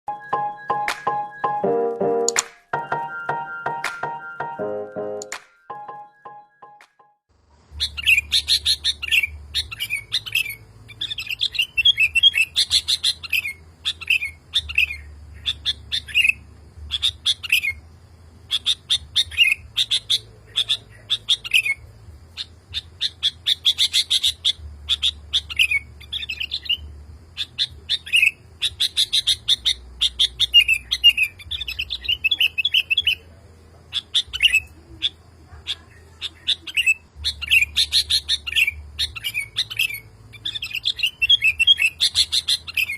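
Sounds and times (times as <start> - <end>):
bulbul singing: 0.1 - 33.3, 33.9 - 42.9.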